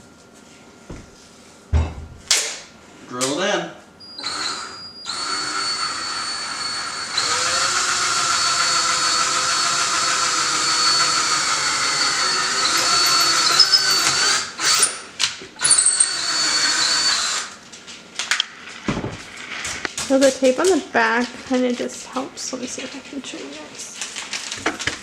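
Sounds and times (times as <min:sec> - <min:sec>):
power drill motor whining: 0:04.2 - 0:17.6.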